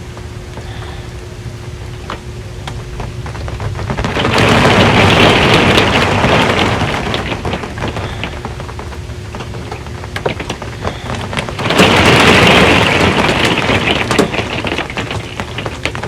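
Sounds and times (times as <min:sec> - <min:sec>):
rain on a metal roof: 0:01.6 - 0:16.0
thunder: 0:03.2 - 0:08.8, 0:10.2 - 0:16.0.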